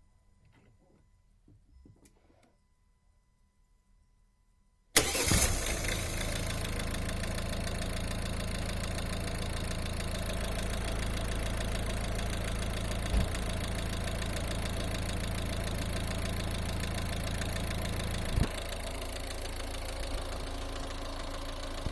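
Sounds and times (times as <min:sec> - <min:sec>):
diesel engine idling: 0:05.0 - 0:21.9.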